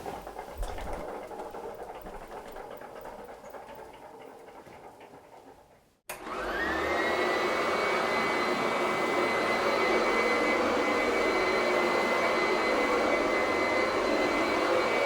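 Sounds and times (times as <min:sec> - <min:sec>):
vacuum cleaner motor whine: 0:06.1 - 0:15.0.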